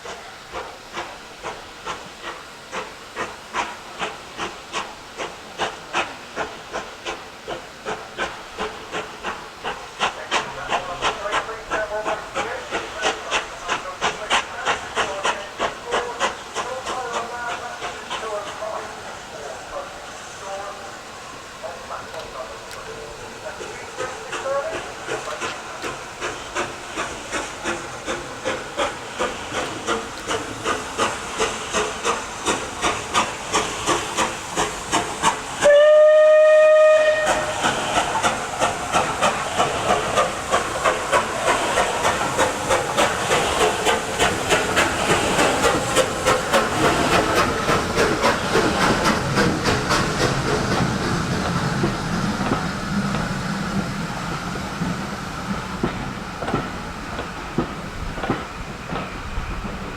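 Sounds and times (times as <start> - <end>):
steam locomotive exhaust beats: 0.0 - 59.9
steam locomotive whistle blast: 35.6 - 37.6.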